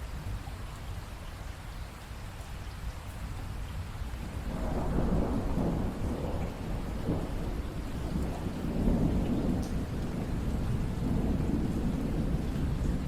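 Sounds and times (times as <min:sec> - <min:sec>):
steady rain: 0:00.0 - 0:13.0
rolling thunder: 0:04.4 - 0:13.0.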